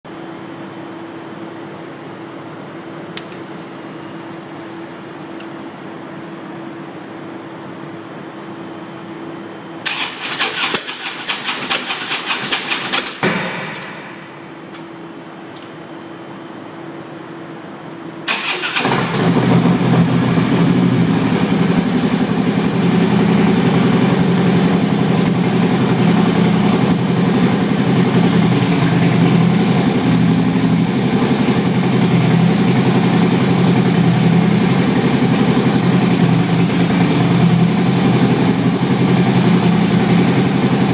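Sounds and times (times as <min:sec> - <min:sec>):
motorcycle starter cranking: 0:09.9 - 0:15.6, 0:18.3 - 0:19.6
motorcycle engine idling: 0:19.1 - 0:40.9.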